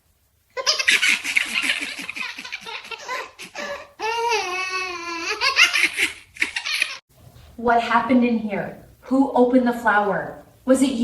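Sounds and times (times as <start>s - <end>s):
children laughing and giggling: 0.6s - 7.0s.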